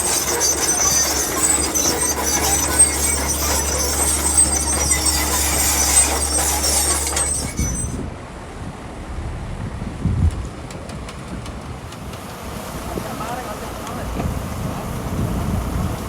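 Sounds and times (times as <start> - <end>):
high-pitched metallic squealing: 0.0 - 8.1
heavy machinery engine drone: 0.0 - 10.2.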